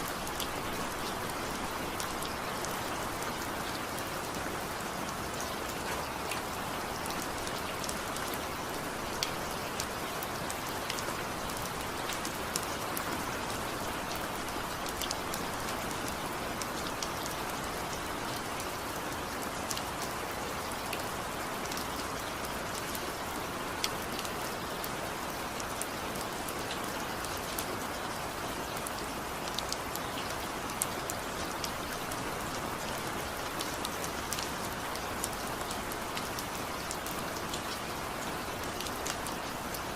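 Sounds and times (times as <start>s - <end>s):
steady rain: 0.0s - 39.9s
raindrop ticks: 33.6s - 37.9s.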